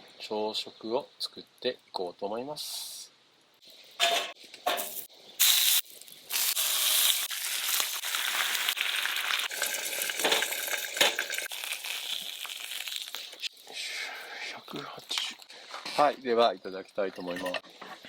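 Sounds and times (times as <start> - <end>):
food sizzling in a pan: 4.7 - 13.6.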